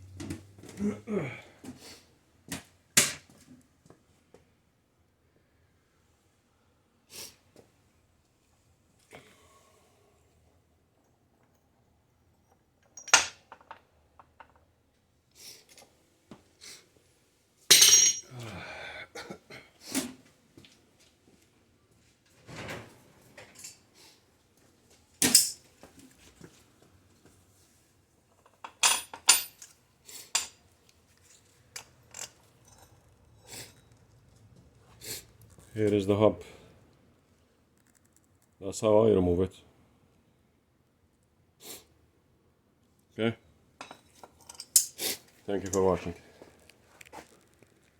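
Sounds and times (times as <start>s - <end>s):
metallic clanks and clinks: 12.9s - 13.8s, 17.7s - 18.3s, 28.4s - 29.7s, 43.8s - 45.0s.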